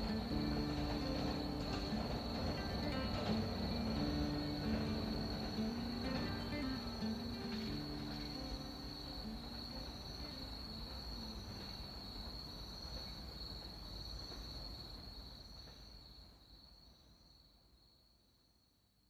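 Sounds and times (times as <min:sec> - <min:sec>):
low background hum: 0:00.0 - 0:14.7
crickets trilling: 0:00.0 - 0:18.1.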